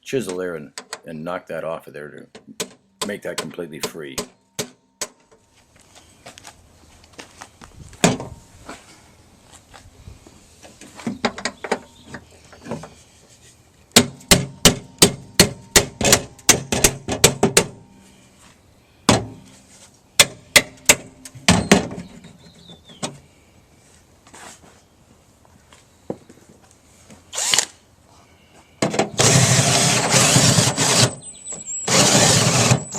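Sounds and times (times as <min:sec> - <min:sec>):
hammer striking chisel on steel: 0:02.6 - 0:05.2.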